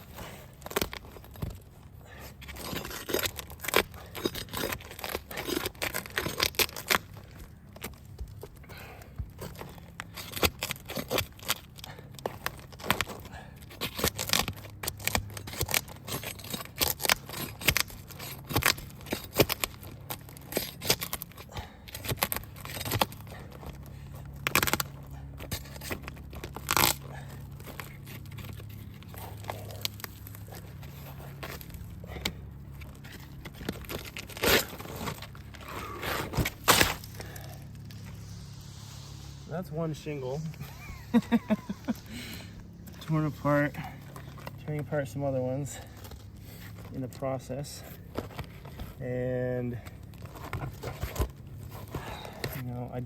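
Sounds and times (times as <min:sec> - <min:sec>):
roof shingles being ripped loose: 0:00.0 - 0:38.1, 0:49.8 - 0:52.6.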